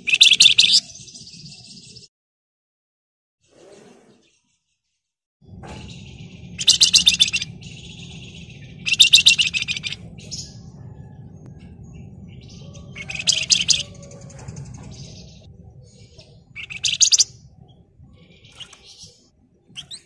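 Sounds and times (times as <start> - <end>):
bird twittering: 0.0 - 1.7, 5.7 - 20.0
low hum: 5.4 - 20.0
bird rattling trills: 5.8 - 10.8, 12.5 - 15.5, 16.5 - 17.4, 19.8 - 20.0.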